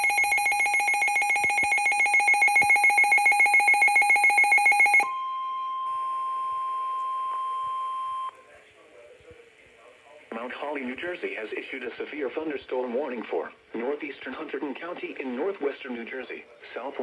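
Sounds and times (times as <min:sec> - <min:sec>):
rapid pulsing alarm beep: 0:00.0 - 0:08.3.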